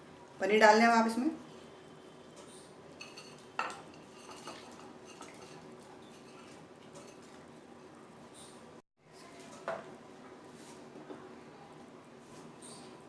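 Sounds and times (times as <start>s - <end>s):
metal spoon scraping cooking pan: 3.0s - 7.3s.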